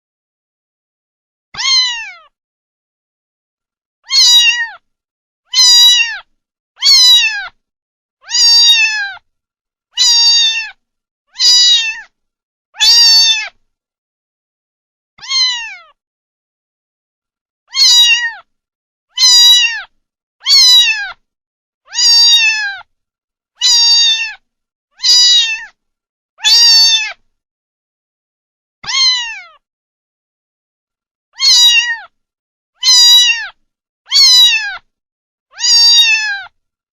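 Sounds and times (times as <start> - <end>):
kitten meowing: 1.6 - 2.3, 4.0 - 4.8, 5.5 - 7.6, 8.2 - 9.2, 10.0 - 12.1, 12.8 - 13.6, 15.2 - 16.0, 17.7 - 18.5, 19.1 - 21.2, 21.9 - 22.9, 23.6 - 24.4, 25.0 - 25.8, 26.4 - 27.2, 28.8 - 29.6, 31.4 - 32.1, 32.8 - 34.9, 35.5 - 36.6.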